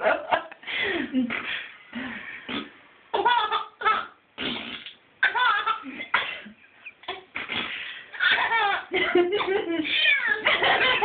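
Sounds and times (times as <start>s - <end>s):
person making fart noises: 2.5s - 2.8s, 4.4s - 5.0s, 7.1s - 7.8s
baby laughing: 3.1s - 4.2s, 5.2s - 6.0s, 8.1s - 11.0s.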